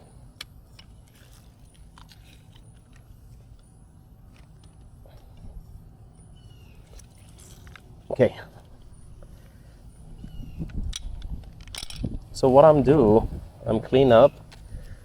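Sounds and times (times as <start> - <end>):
low steady rumble: 0.0 - 15.0
faint high chirp: 6.1 - 7.2.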